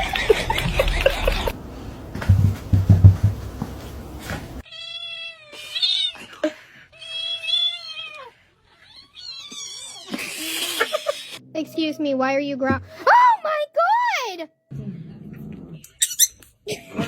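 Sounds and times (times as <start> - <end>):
low thumping and rumbling: 0.6 - 4.6.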